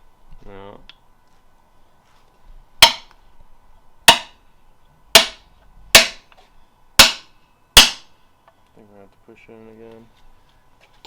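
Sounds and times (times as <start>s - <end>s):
hammer tapping metal: 2.8s - 3.1s, 4.1s - 4.4s, 5.2s - 6.3s, 7.0s - 8.1s.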